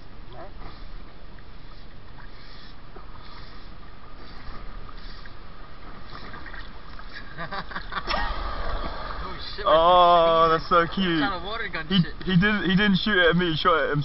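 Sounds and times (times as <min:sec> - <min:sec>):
river water washing: 0:08.0 - 0:13.8.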